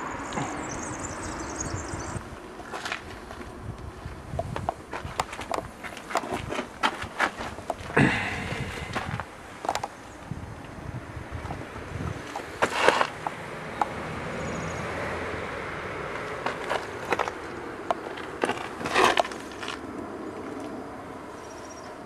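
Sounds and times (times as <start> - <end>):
bike tyres on rough ground: 0.0 - 14.8, 15.4 - 21.8
bike jolts: 4.2 - 10.0, 11.5 - 13.4, 16.1 - 19.9.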